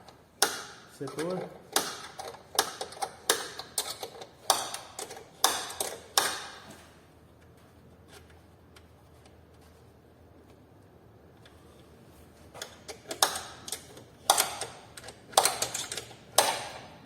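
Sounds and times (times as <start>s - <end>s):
hand tools clicking on metal: 0.4s - 6.4s, 12.6s - 16.8s.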